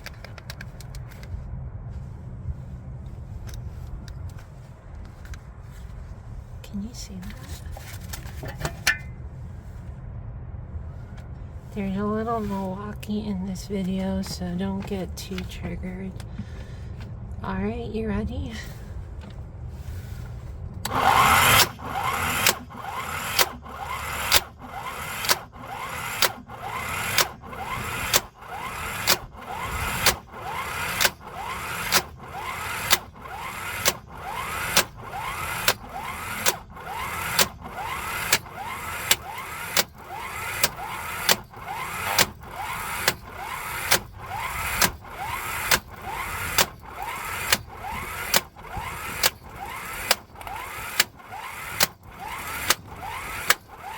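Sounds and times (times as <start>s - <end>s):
impact wrench running: 8.6s - 9.1s, 20.9s - 53.9s.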